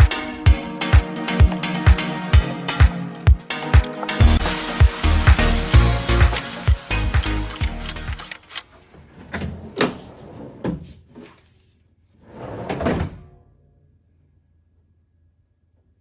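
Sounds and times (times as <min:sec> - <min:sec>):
drawer rolling on slide rails: 0:00.0 - 0:11.0, 0:12.2 - 0:13.1.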